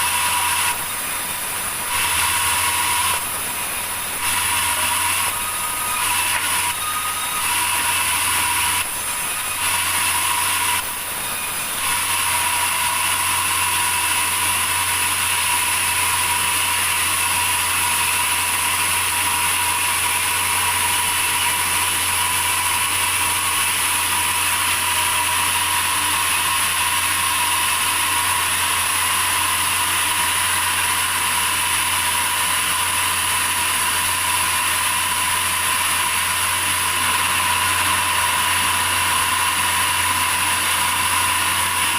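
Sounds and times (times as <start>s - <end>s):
sawmill machinery whining: 0.0s - 41.9s.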